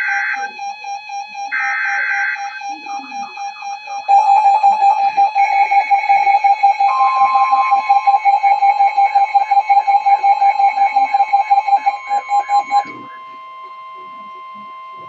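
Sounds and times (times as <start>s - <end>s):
loud electronic alert tone: 0.0s - 13.6s
higher alert tone: 4.1s - 13.0s.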